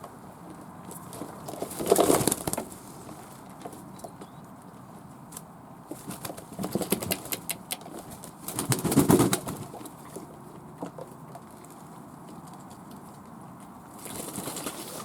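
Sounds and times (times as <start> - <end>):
doves flapping wings: 5.9 - 9.8.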